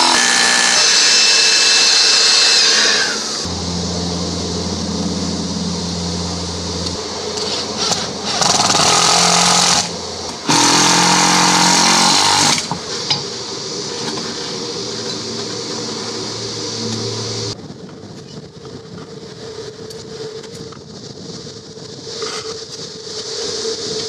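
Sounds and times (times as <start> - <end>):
power tool running: 0.0 - 17.6
steady machine hum: 0.0 - 22.2.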